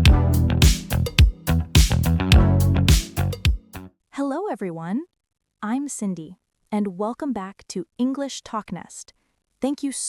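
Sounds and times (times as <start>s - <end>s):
drum beat: 0.0s - 3.8s
plucked guitar: 0.0s - 3.8s
sustained bass notes: 0.0s - 3.9s.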